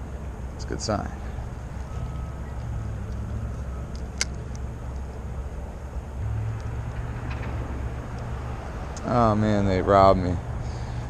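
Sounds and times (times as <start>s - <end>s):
distant construction machinery rumble: 0.0s - 11.0s
sharp click: 3.9s - 4.6s.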